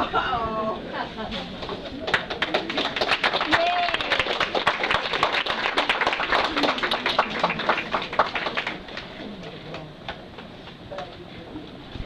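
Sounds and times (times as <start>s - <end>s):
crowd applauding: 1.6s - 10.2s.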